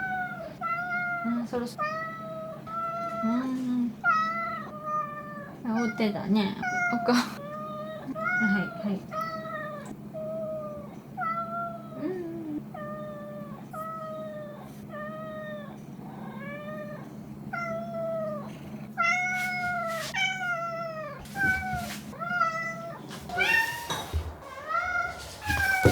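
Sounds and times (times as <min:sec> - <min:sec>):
cat meowing: 0:04.0 - 0:12.0, 0:12.7 - 0:25.9.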